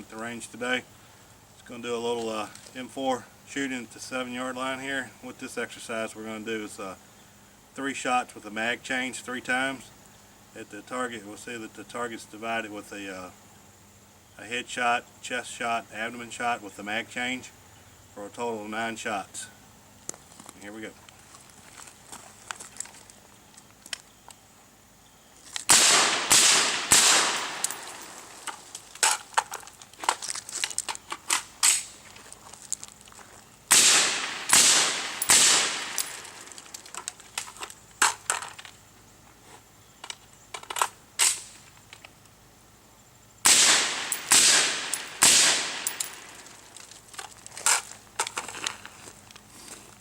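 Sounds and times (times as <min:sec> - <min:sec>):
suppressed rifle shots: 0:25.7 - 0:28.0, 0:33.7 - 0:36.3, 0:43.4 - 0:46.3.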